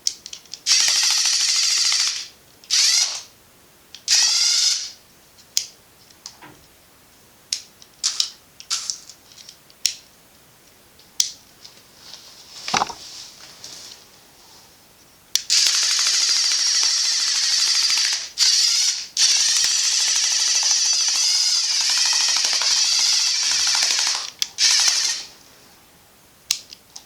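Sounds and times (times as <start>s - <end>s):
plastic mechanism clicking: 12.7s - 13.0s.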